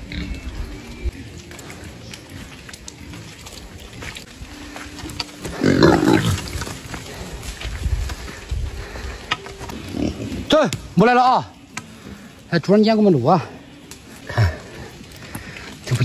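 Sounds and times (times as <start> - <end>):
pigs grunting: 5.0 - 7.6, 8.2 - 11.0, 14.2 - 16.0.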